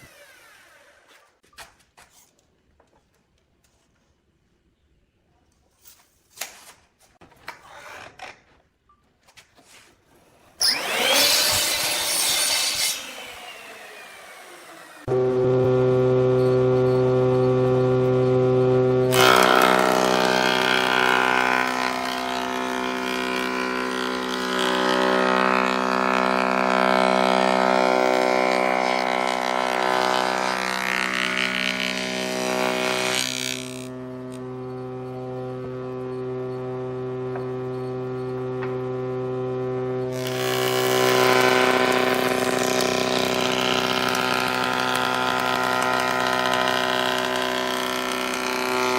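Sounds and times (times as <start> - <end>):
saw cutting wood: 0.0 - 1.4, 10.5 - 48.9
table saw motor hum: 0.0 - 1.4, 10.6 - 48.9.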